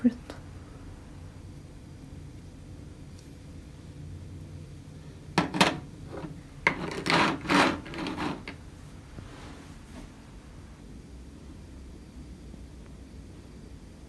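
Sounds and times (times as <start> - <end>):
scraping and rubbing handling sounds: 5.4 - 10.2.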